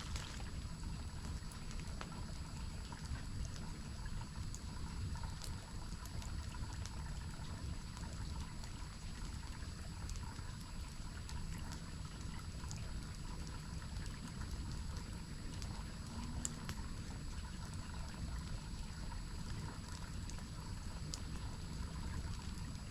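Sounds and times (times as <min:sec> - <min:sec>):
waterfall running: 0:00.0 - 0:00.8
campfire crackles and pops: 0:00.0 - 0:22.9.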